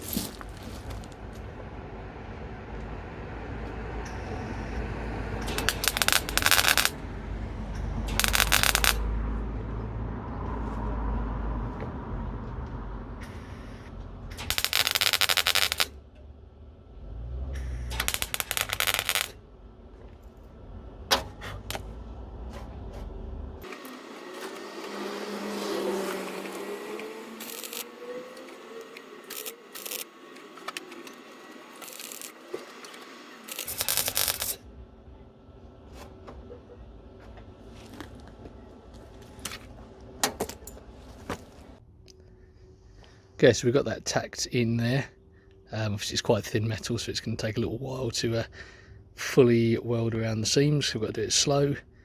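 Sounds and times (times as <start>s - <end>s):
crackling welding arc bursts: 5.4s - 7.0s, 8.0s - 9.0s, 13.3s - 16.0s, 17.6s - 19.4s, 26.3s - 34.6s
short electric zaps: 5.4s - 7.0s, 8.1s - 9.0s, 13.2s - 16.0s, 17.6s - 19.4s, 27.3s - 30.2s, 31.2s - 34.6s
steady low hum: 12.2s - 23.7s.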